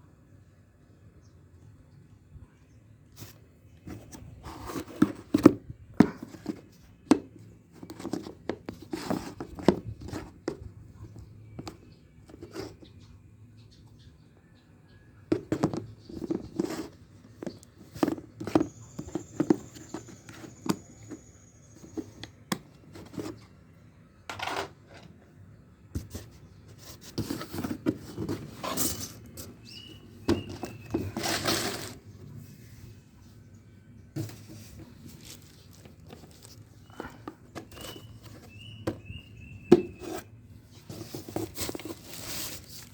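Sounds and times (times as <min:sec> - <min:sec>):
packaging rustling and tearing: 0:35.0 - 0:36.7, 0:41.0 - 0:42.9.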